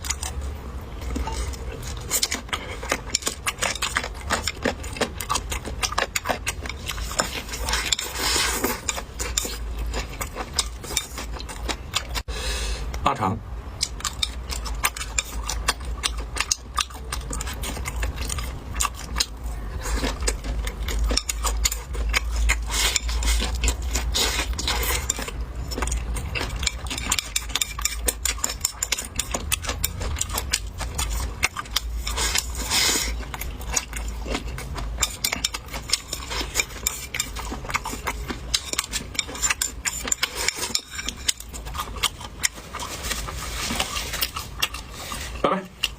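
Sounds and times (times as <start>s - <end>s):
steady low hum: 0.0s - 45.9s
utensils clinking against dishes: 20.9s - 45.9s.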